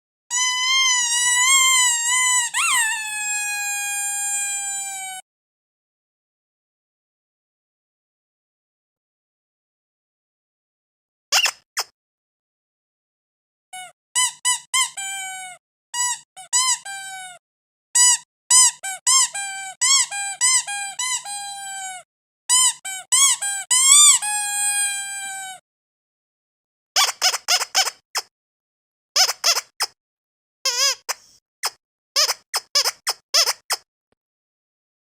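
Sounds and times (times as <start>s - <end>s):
squeaky dog toy squeaking: 0.3s - 5.2s, 11.3s - 11.9s, 13.8s - 17.4s, 18.0s - 25.6s, 27.0s - 28.3s, 29.2s - 30.0s, 30.6s - 33.9s.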